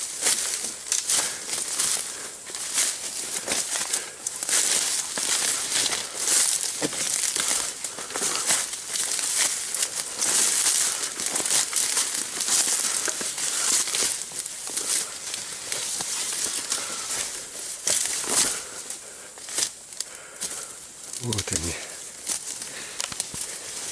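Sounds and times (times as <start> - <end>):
footsteps crunching through leaf litter: 0.0 - 18.7
twigs snapping: 21.1 - 23.5.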